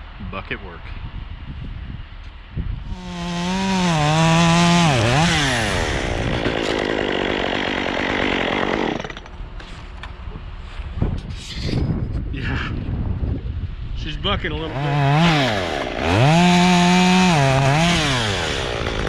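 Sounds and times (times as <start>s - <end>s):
chainsaw cutting wood: 2.9s - 9.4s, 14.7s - 19.0s.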